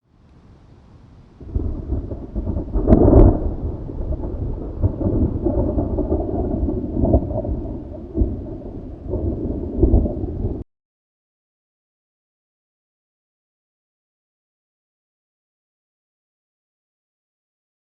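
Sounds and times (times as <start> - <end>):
rolling thunder rumble: 0.4 - 10.6
thunder crack: 1.4 - 10.6.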